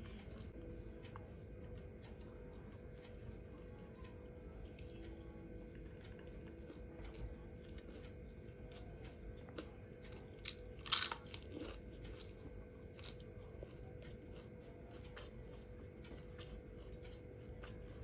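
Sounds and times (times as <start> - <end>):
chewing clicks: 0.0 - 18.0
faint steady hum: 0.0 - 18.0
crunchy bites: 10.4 - 14.4.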